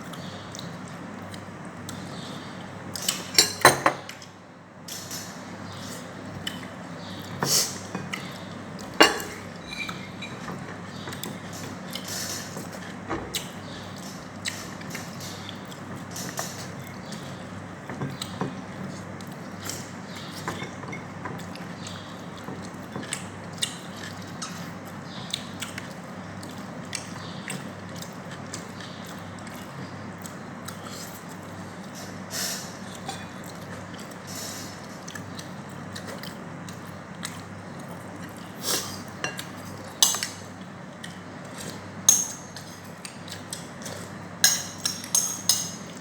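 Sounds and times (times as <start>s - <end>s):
cutlery clinking against plate: 3.0s - 4.3s, 8.9s - 14.6s, 20.4s - 21.5s, 39.2s - 40.4s, 41.6s - 42.9s, 44.4s - 46.0s
cutlery scraping plate: 9.0s - 10.8s.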